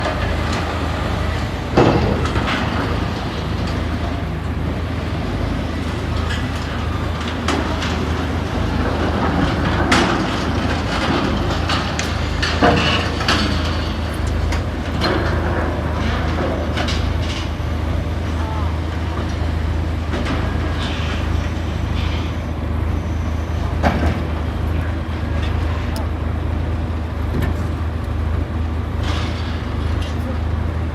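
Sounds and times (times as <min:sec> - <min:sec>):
metallic knocks and clanks: 0:00.0 - 0:17.5
heavy machinery humming: 0:00.0 - 0:30.9.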